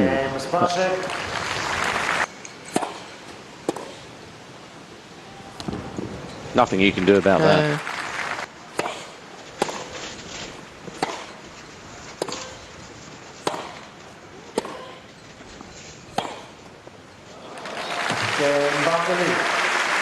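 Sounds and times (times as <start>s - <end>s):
racket striking tennis ball: 2.6s - 4.2s, 8.6s - 15.2s, 16.0s - 16.8s.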